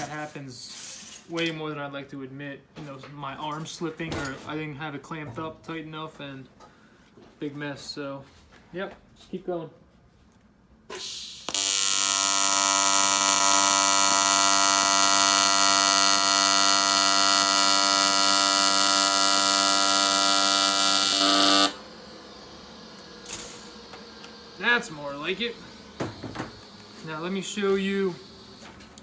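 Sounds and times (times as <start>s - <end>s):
arc strike hiss: 10.9s - 28.8s
welding arc buzzing: 10.9s - 29.0s.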